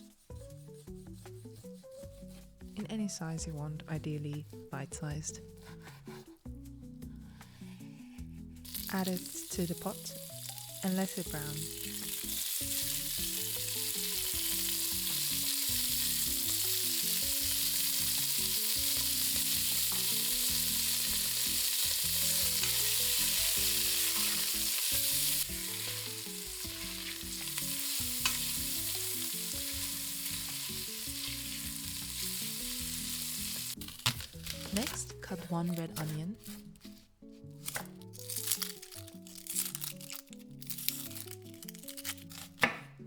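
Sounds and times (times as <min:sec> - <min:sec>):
meat sizzling in oil: 0:08.7 - 0:35.0.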